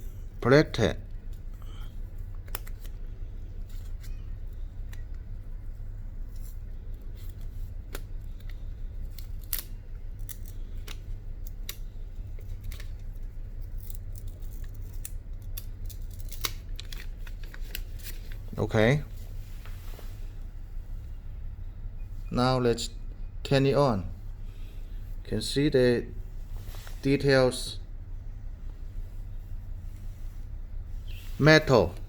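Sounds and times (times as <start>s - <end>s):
steady low hum: 0.0s - 32.0s
plastic film crackling: 7.1s - 18.5s.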